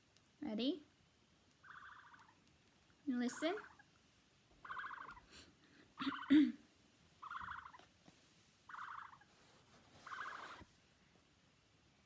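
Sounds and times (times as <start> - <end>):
buzzy ostrich calls: 1.6 - 2.4, 3.3 - 3.9, 4.6 - 5.3, 6.0 - 6.4, 7.2 - 7.9, 8.7 - 9.3, 10.0 - 10.7.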